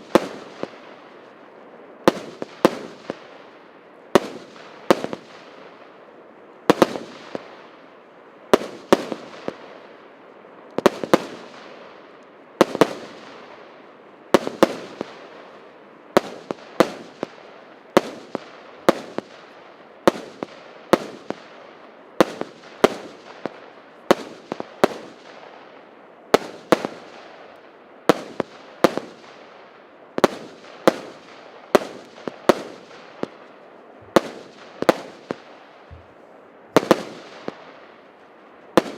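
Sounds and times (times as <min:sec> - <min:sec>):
fireworks reports: 0:34.0 - 0:36.2.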